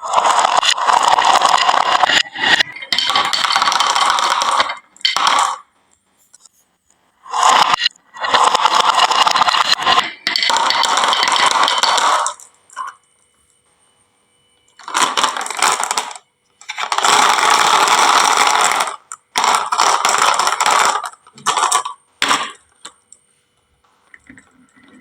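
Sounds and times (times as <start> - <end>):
marbles rattling down wooden run: 0.0 - 5.6, 7.3 - 12.4, 14.8 - 22.6.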